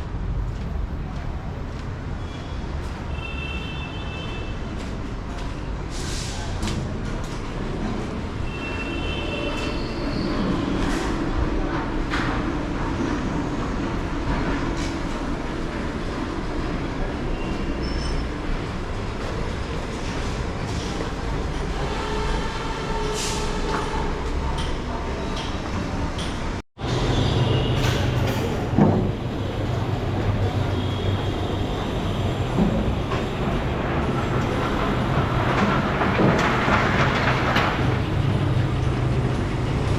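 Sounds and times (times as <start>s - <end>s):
heavy machine running: 26.2s - 39.9s
heavy mechanical rumble: 27.8s - 39.9s.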